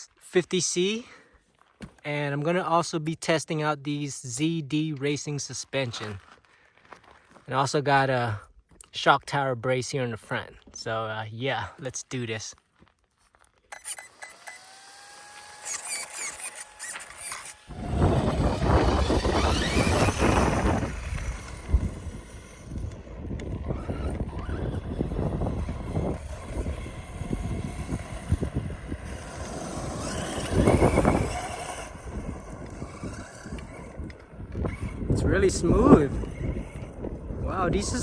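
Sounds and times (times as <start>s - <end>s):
truck running over loose dirt: 13.6s - 37.4s
rc truck electric motor whining: 13.7s - 38.0s
wind buffeting microphone: 17.6s - 38.0s.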